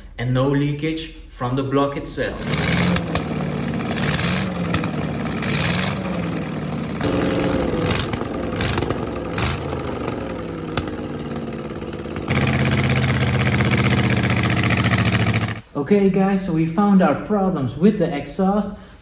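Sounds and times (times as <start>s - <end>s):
boat engine running: 2.4s - 15.6s.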